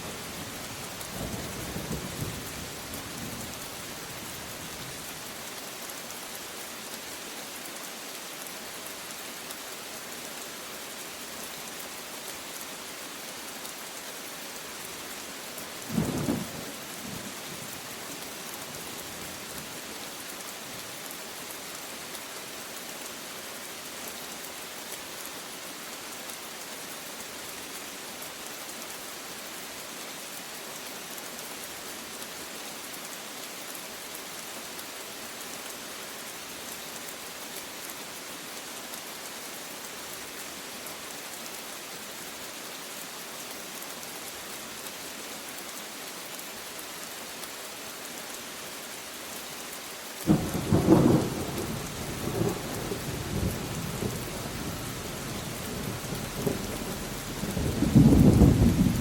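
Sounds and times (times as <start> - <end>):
steady rain falling: 0.0 - 59.0
low thunder rumble: 55.8 - 59.0.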